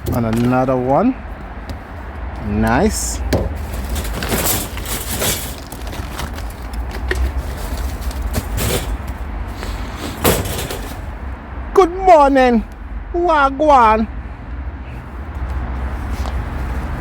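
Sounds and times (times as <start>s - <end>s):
rustling and handling noise: 0.0s - 11.2s, 15.5s - 17.0s
scrapes and sharp knocks: 3.2s - 6.3s.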